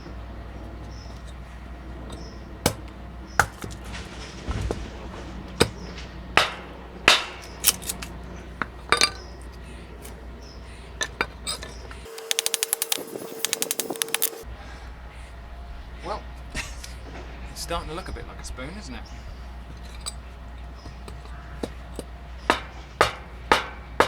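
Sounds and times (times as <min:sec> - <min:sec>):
hatchet chopping wood: 0:02.7 - 0:03.9, 0:05.6 - 0:08.1, 0:12.1 - 0:14.4, 0:22.5 - 0:24.0.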